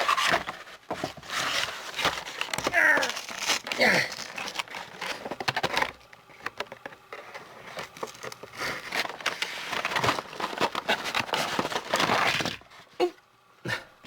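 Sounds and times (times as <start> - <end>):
cardboard box being handled: 0.0 - 6.0
plastic packaging crinkling: 0.0 - 13.0
packaging clicks: 1.9 - 12.6.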